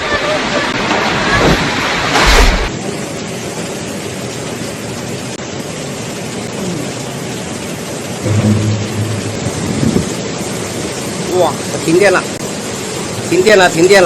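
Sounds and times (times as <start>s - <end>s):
tornado wind and rain: 0.0s - 14.0s
deep rumble: 8.2s - 10.7s.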